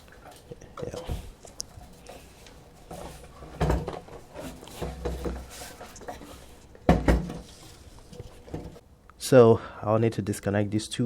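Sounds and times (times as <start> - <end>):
parts rattling: 0.3 - 8.8
motorcycle parts knocking: 6.9 - 7.4.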